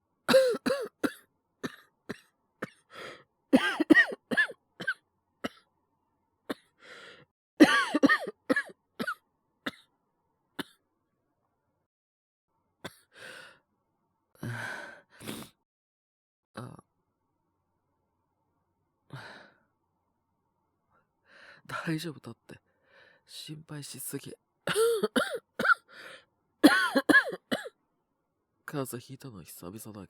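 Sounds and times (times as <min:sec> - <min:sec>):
man coughing: 0:00.3 - 0:02.8, 0:03.6 - 0:05.6, 0:07.6 - 0:09.8, 0:24.7 - 0:25.8, 0:26.6 - 0:27.7
man breathing: 0:02.9 - 0:03.2, 0:06.8 - 0:07.3, 0:19.1 - 0:19.6.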